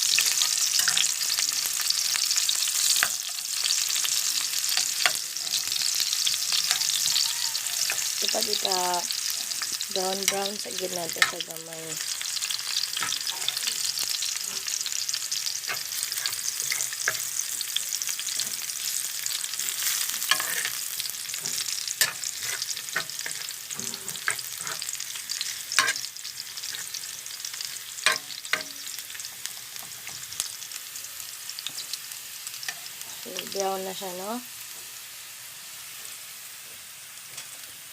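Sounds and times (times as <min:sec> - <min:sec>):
oil sizzling in a pan: 0:00.0 - 0:37.9
utensil scraping a pan: 0:15.6 - 0:17.4, 0:19.6 - 0:27.0.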